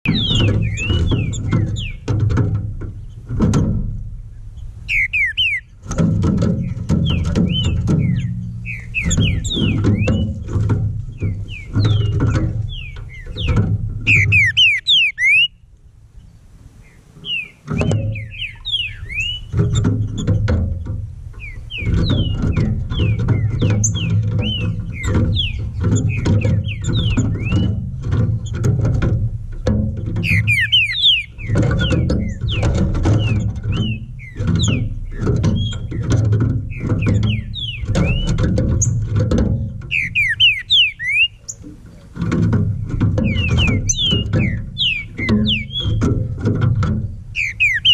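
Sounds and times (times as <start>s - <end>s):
bird singing whistled notes: 0.0s - 2.1s, 4.6s - 5.8s, 6.6s - 10.5s, 11.1s - 15.6s, 16.2s - 20.4s, 21.4s - 28.6s, 30.2s - 41.7s, 42.9s - 46.2s, 47.0s - 47.9s
low background rumble: 0.0s - 47.9s.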